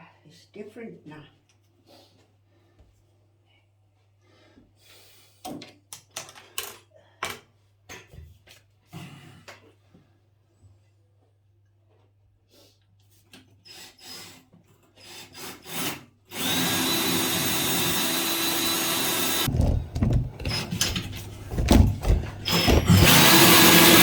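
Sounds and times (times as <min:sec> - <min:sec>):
power drill whining: 0:15.0 - 0:19.6, 0:22.0 - 0:24.0
knocks and thumps: 0:19.3 - 0:23.8
knocks and clicks: 0:19.3 - 0:24.0.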